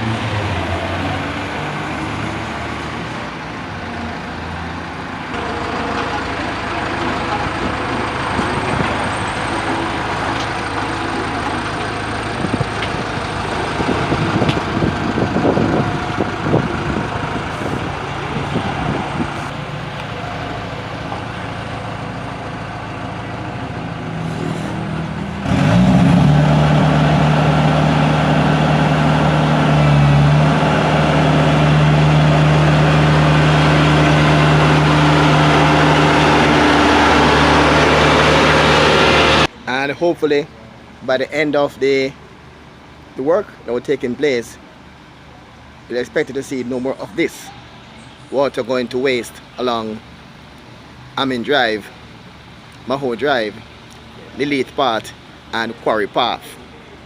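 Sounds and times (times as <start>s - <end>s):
heavy machinery engines running: 0.0s - 39.6s.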